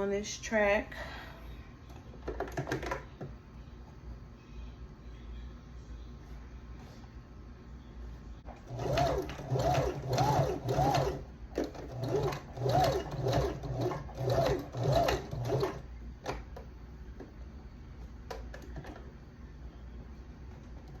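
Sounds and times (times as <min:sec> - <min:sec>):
sewing machine stitching: 0:08.5 - 0:16.4.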